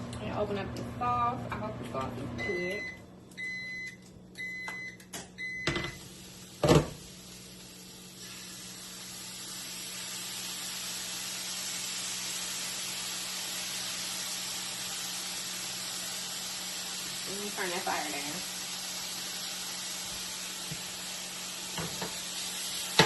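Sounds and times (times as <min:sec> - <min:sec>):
hot pan sizzling: 0:05.9 - 0:23.0.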